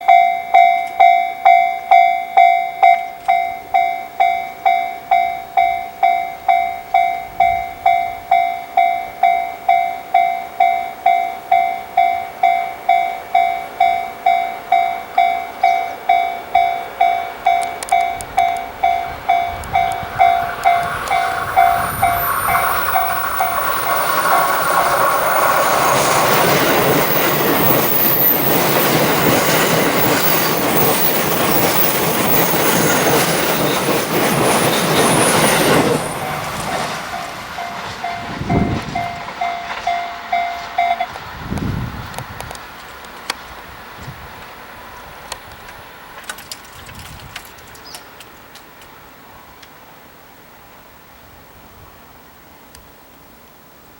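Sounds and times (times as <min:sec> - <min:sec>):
level crossing alarm bell: 0:00.0 - 0:41.1
electric train passing: 0:03.2 - 0:46.8.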